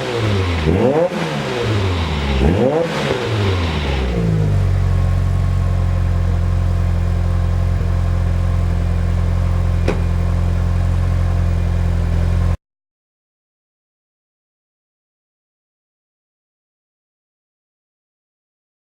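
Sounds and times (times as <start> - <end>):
car engine idling: 0.0 - 12.6.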